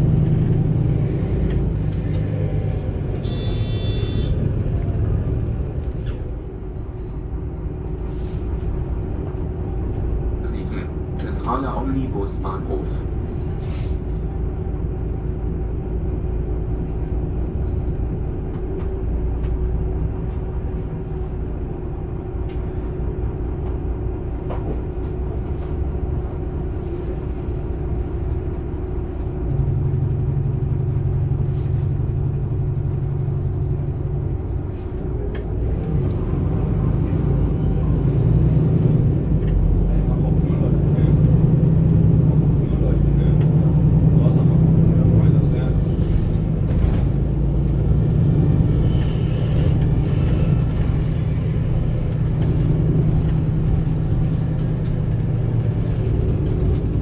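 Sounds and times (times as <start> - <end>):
bus diesel engine running: 0.0 - 57.0
road noise: 0.0 - 57.0.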